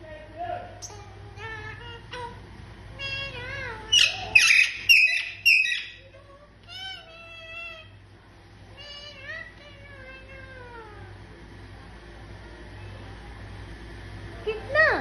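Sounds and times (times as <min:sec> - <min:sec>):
parakeet bending pitched calls: 0:03.0 - 0:06.1
parakeet harsh screeching: 0:03.0 - 0:06.1.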